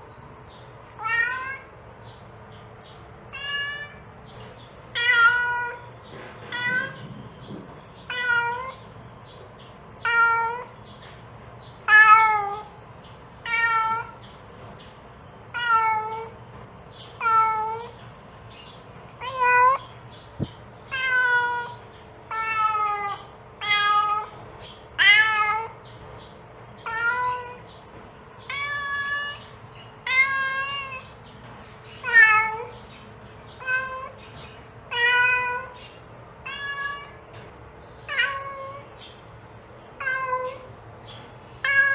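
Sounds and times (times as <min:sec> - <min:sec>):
cat meowing: 0:01.0 - 0:01.7, 0:03.3 - 0:04.1, 0:04.9 - 0:05.9, 0:06.5 - 0:07.2, 0:08.0 - 0:08.8, 0:10.0 - 0:10.8, 0:11.8 - 0:12.8, 0:13.4 - 0:14.2, 0:15.5 - 0:16.4, 0:17.2 - 0:18.0, 0:19.2 - 0:19.8, 0:20.8 - 0:25.8, 0:26.8 - 0:27.7, 0:28.4 - 0:31.2, 0:32.0 - 0:32.8, 0:33.5 - 0:34.2, 0:34.9 - 0:35.8, 0:36.4 - 0:37.2, 0:38.0 - 0:39.0, 0:40.0 - 0:40.7, 0:41.6 - 0:41.9.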